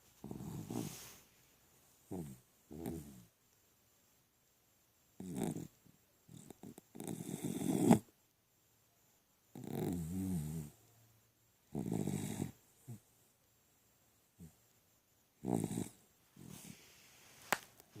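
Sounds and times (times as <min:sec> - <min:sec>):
dog snoring: 0:00.2 - 0:01.2, 0:02.1 - 0:03.3, 0:05.2 - 0:08.1, 0:09.5 - 0:10.8, 0:11.7 - 0:13.0, 0:15.4 - 0:16.8.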